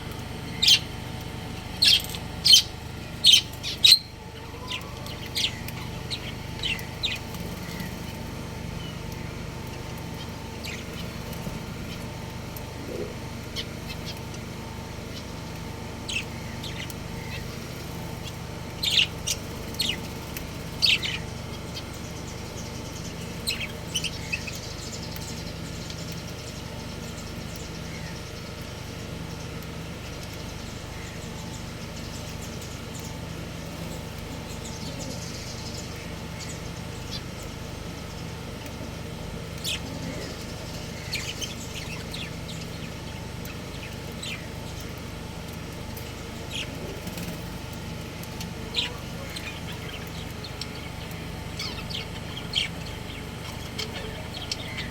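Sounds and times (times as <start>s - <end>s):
steady low hum: 0.0s - 54.9s
budgerigars chirping: 0.5s - 0.9s, 1.7s - 12.2s, 16.0s - 28.2s, 39.6s - 45.0s, 48.3s - 54.9s.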